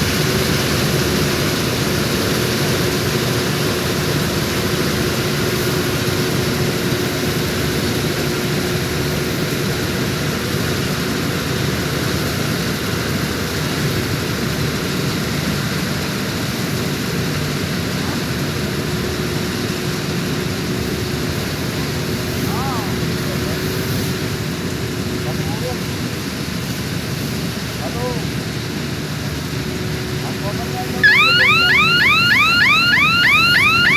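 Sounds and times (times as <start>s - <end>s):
combine harvester droning: 14.4s - 33.9s.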